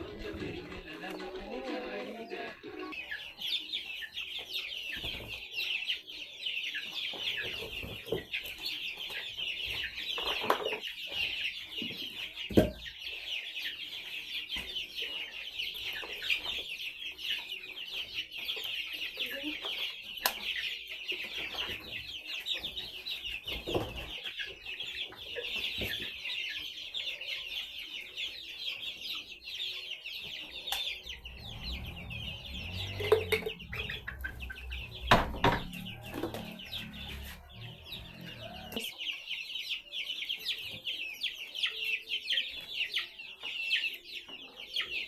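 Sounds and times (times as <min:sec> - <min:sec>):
chickens calling: 0:00.0 - 0:45.0
low rumble: 0:30.9 - 0:38.8
sharp knocks: 0:34.9 - 0:36.5.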